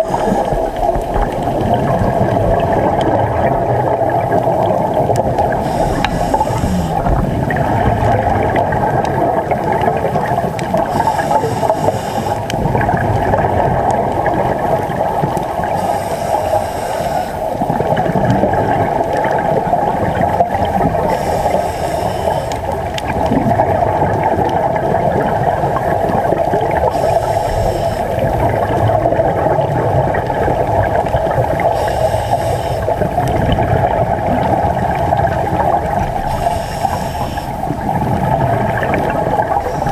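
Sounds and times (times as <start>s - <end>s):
breathing through a regulator: 0.0s - 1.4s, 5.5s - 7.9s, 10.7s - 12.7s, 15.6s - 17.6s, 20.8s - 23.0s, 26.7s - 28.5s, 31.4s - 33.2s, 36.0s - 37.9s, 39.0s - 39.9s
exhaled bubbles: 0.0s - 39.9s
steady underwater rumble: 0.0s - 39.9s.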